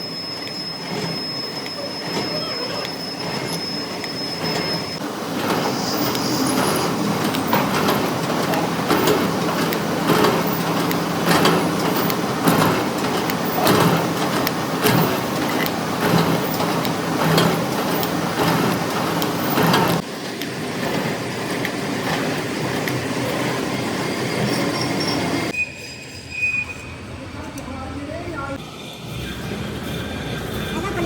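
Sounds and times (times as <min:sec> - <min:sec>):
quieter steady machine noise: 0:00.0 - 0:25.5
heavy machine with regular knock: 0:00.9 - 0:23.8.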